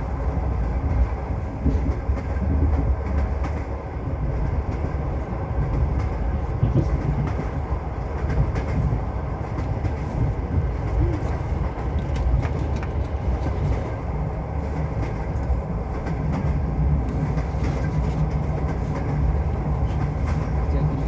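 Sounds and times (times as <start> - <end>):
train rumble inside carriage: 0.0 - 21.0
wheels clicking on rails: 0.0 - 21.0.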